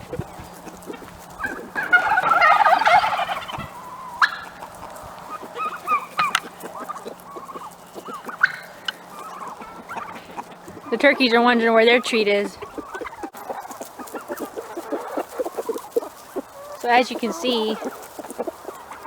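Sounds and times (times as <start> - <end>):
short fowl calls: 0.0 - 19.0
turkey gobbling: 0.0 - 19.0.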